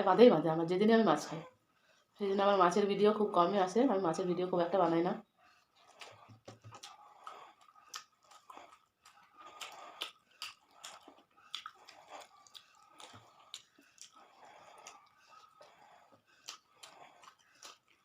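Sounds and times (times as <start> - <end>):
chewing food with mouth clicks: 5.4 - 18.0.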